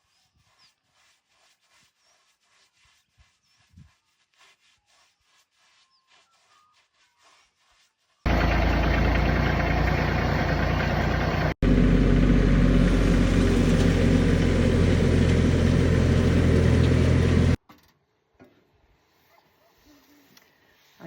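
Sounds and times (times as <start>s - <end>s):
tractor engine running: 8.3s - 17.6s.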